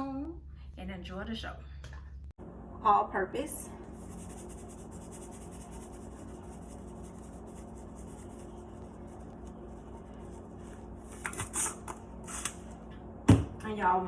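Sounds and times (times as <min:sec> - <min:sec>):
low room hum: 0:00.0 - 0:14.0
faint scratchy rubbing: 0:03.9 - 0:10.9.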